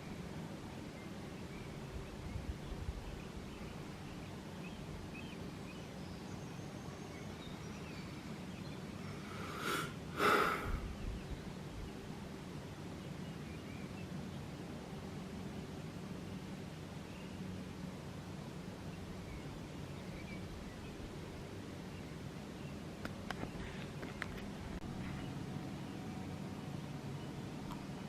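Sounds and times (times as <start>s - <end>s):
faint background hiss: 0.0s - 28.0s
steady low hum: 0.0s - 28.0s
short rushes of noise: 9.2s - 10.8s.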